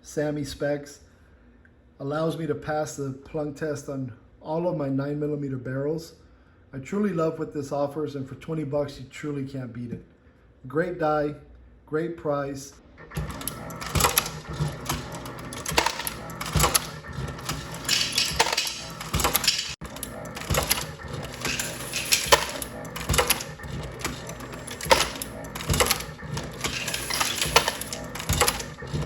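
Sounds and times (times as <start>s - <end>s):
motor hum: 12.8s - 29.0s
reloading press metallic clacks: 13.0s - 29.0s.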